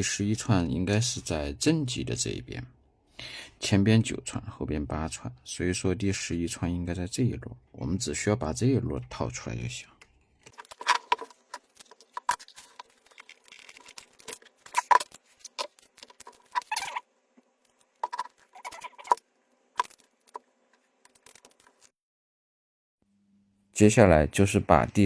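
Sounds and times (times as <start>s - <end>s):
battery cells clicking and scraping: 10.0s - 21.9s.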